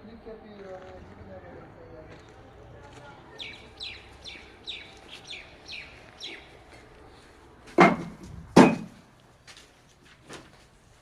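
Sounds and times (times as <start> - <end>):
loud sharp knocks: 7.7 - 9.0.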